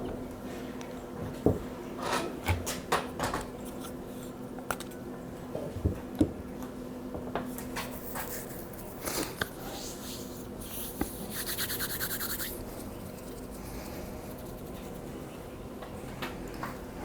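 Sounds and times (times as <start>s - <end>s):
quick rasping strokes: 10.6s - 15.2s.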